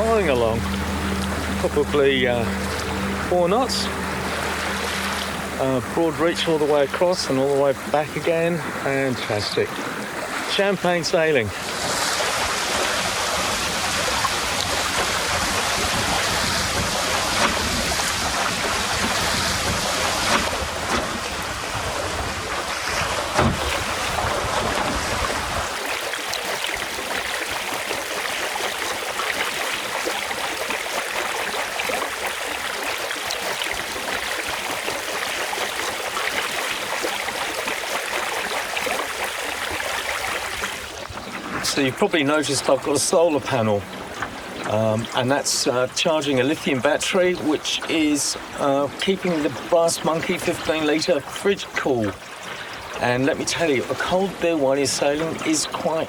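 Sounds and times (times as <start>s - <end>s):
water rushing along a hull: 0.0s - 56.0s
wind buffeting microphone: 11.6s - 25.8s.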